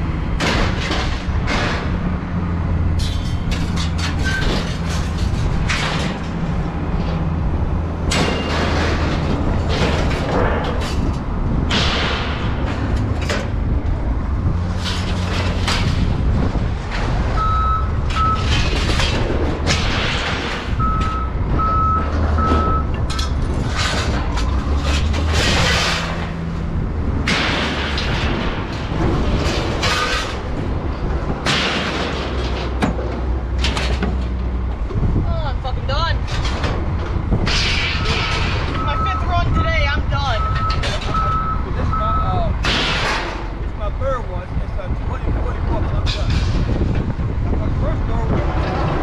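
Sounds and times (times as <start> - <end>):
heavy vehicle engine running: 0.0 - 49.0
reversing beeper: 20.8 - 23.0, 40.4 - 42.4.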